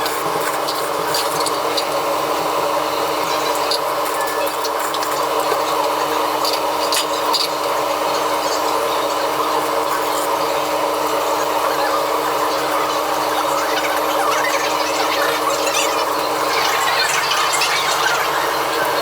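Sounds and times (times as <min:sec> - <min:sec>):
machinery hum: 0:07.8 - 0:19.0.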